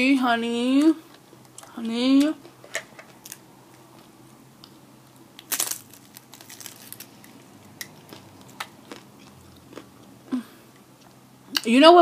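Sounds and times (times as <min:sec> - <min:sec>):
crunching fried tortilla: 0:05.3 - 0:10.4.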